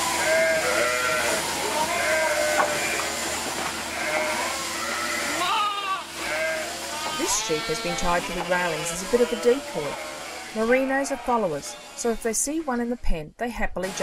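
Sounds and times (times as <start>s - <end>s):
sheep bleating: 0.1s - 3.2s, 3.8s - 12.1s
lambs calling: 0.2s - 3.2s, 3.8s - 11.7s.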